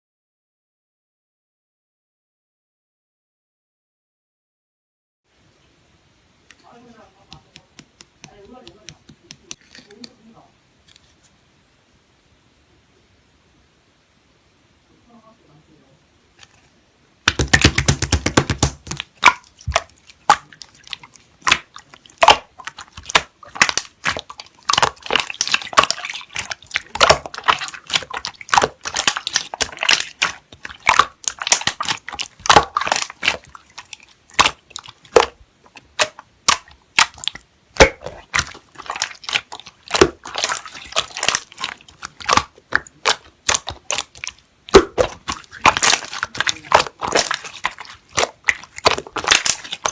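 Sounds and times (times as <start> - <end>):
hands squishing slime: 6.6 - 10.2, 17.3 - 49.9.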